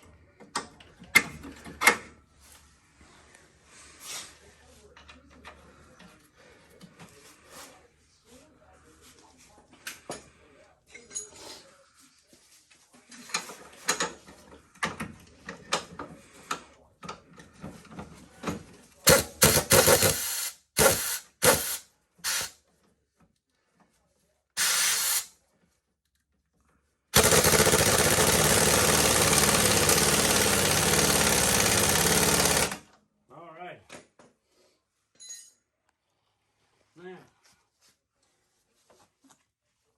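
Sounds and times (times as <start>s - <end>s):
power tool running: 19.1s - 22.5s, 24.6s - 25.3s, 27.2s - 32.8s.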